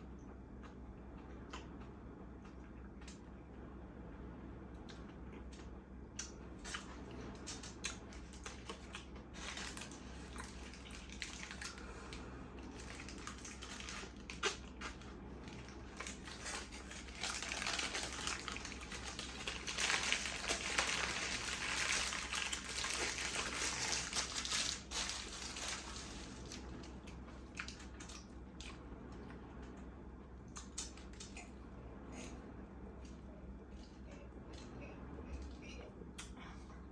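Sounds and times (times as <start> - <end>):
chewing with wet mouth clicks: 0.5 - 3.3, 27.0 - 29.4, 30.5 - 31.6, 33.0 - 36.4
crinkling or crunching: 6.6 - 28.8.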